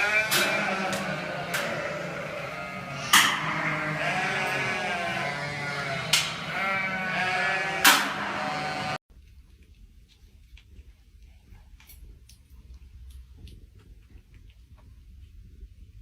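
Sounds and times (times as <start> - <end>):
animal bleating: 0.0 - 9.0.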